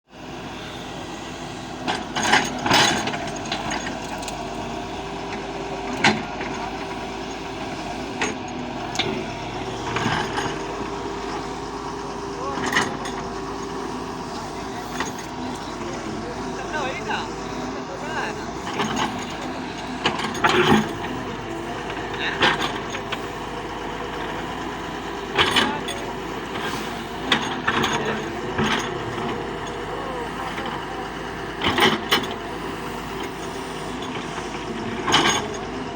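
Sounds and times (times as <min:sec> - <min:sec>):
excavator diesel engine running: 0:00.1 - 0:35.9
digging knocks and clatters: 0:08.2 - 0:16.6, 0:18.6 - 0:35.9.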